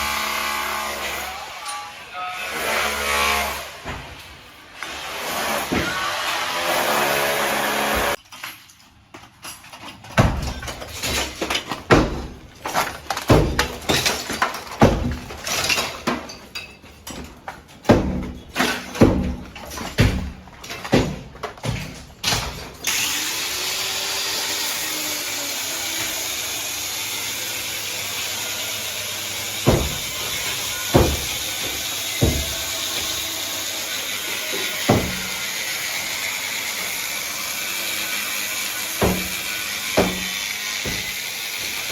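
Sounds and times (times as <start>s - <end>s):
irregular knocks and bangs: 29.7s - 30.2s, 30.9s - 33.1s.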